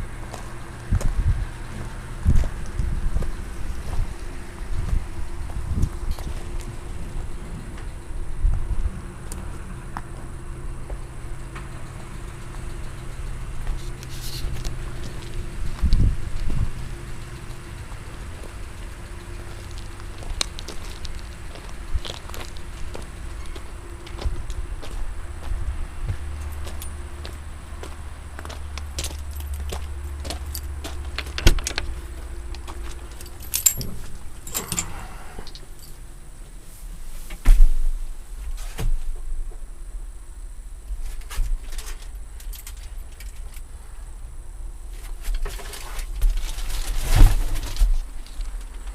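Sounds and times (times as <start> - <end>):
diesel engine idling: 0.0 - 36.6
steady low hum: 0.0 - 48.9
metallic jingling and clicking: 28.7 - 36.0.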